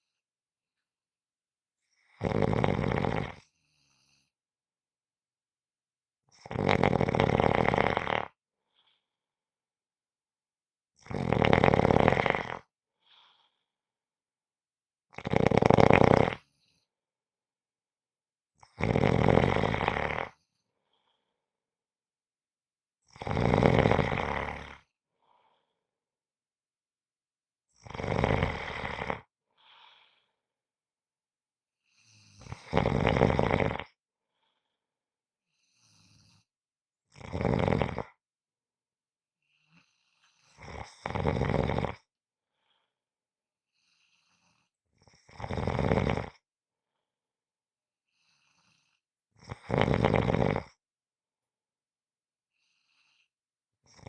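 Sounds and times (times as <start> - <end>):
person snoring: 2.0 - 4.3, 6.3 - 8.4, 11.0 - 13.5, 15.2 - 16.5, 18.6 - 20.4, 23.1 - 24.9, 27.7 - 30.2, 32.0 - 33.9, 37.1 - 38.2, 39.8 - 42.1, 43.8 - 46.4, 48.2 - 50.8.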